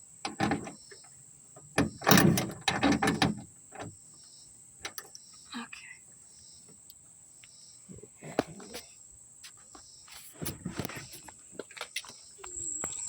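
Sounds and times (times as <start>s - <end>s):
car trunk latch clicking: 0.2s - 0.8s, 1.7s - 3.9s
knocks and rattles: 1.6s - 3.9s.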